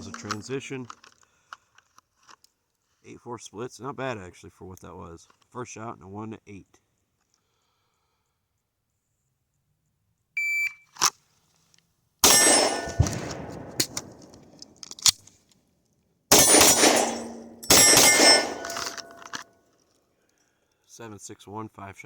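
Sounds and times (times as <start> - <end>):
shot timer beep: 10.4 - 10.8
pistol shots: 12.2 - 14.7, 16.3 - 19.3.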